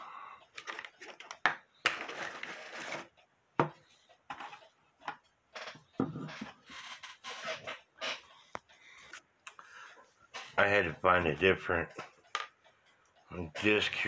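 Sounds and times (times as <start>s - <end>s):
tools clicking and knocking on workbench: 12.0s - 12.6s.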